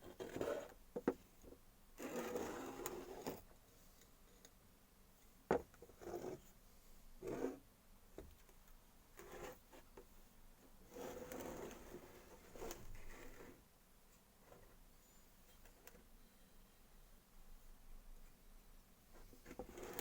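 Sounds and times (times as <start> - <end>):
rubbing and scraping handling: 19.2 - 20.0.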